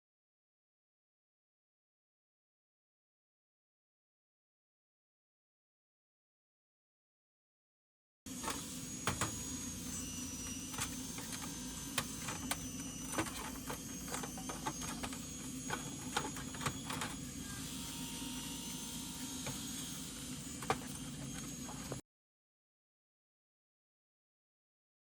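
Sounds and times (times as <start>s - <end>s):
faint high whine: 8.3s - 22.0s.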